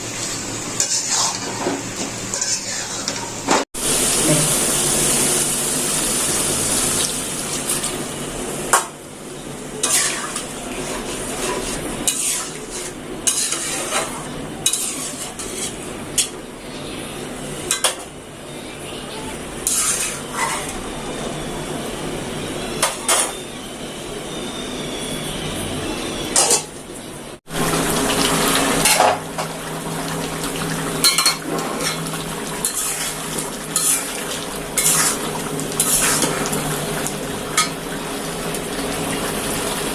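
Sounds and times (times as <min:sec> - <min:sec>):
food sizzling: 0:00.0 - 0:23.4, 0:27.4 - 0:39.9
metal spoon scraping a pan: 0:00.8 - 0:03.4, 0:09.8 - 0:16.9, 0:19.6 - 0:20.8, 0:32.6 - 0:34.2, 0:34.8 - 0:36.4.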